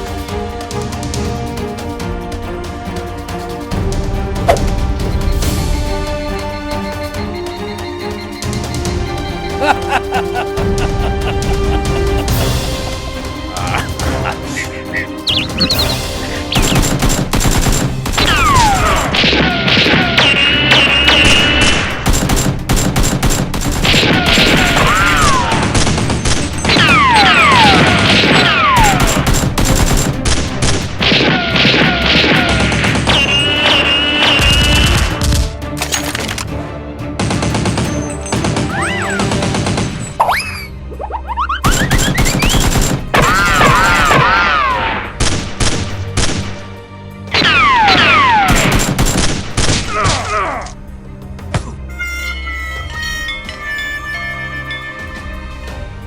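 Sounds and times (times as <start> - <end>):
background music with falling tones: 0.0 - 56.0
gunfire sound effects: 15.4 - 35.4, 47.4 - 49.9.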